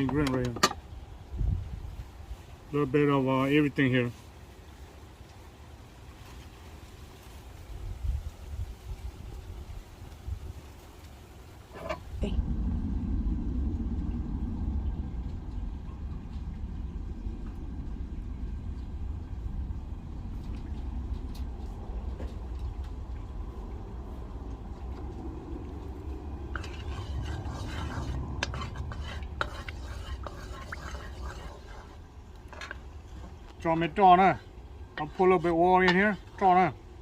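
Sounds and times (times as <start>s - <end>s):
steady low rumble: 7.7s - 37.0s.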